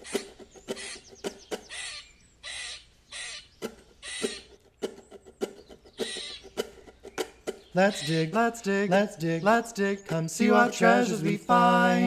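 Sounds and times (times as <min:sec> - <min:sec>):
sharp clicks: 0:03.6 - 0:10.4.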